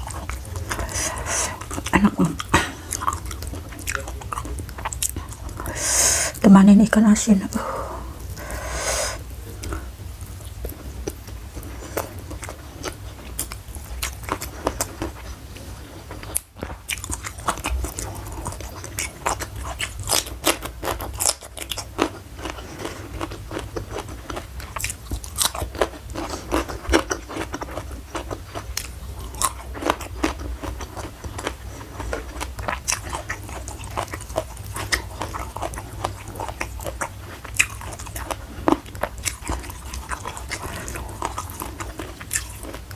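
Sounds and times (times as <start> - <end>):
wet mouth sounds: 0.0 - 4.0
chewing and crunching food: 0.0 - 42.9.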